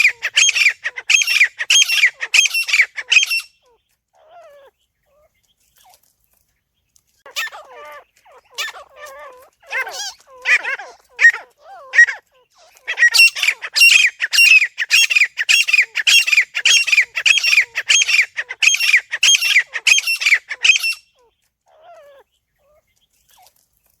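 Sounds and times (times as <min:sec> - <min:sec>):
francolin calling shrill notes: 0:00.0 - 0:03.6, 0:12.9 - 0:21.1.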